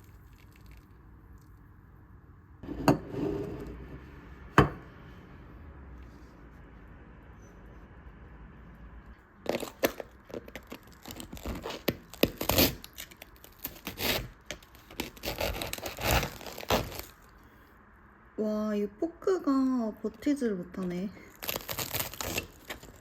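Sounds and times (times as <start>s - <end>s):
sandwich crackling and tearing: 0.0s - 1.6s, 9.4s - 17.4s, 21.2s - 23.0s.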